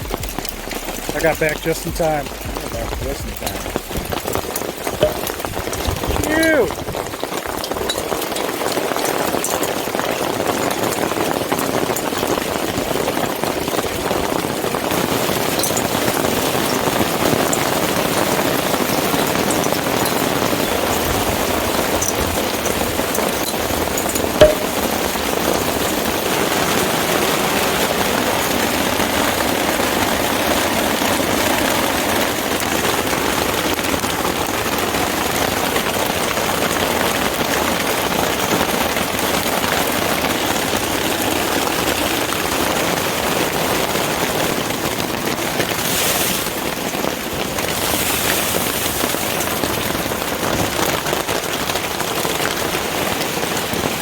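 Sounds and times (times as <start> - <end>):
heavy rain pelting down: 0.0 - 54.0
sharp loud knock: 24.4 - 24.9.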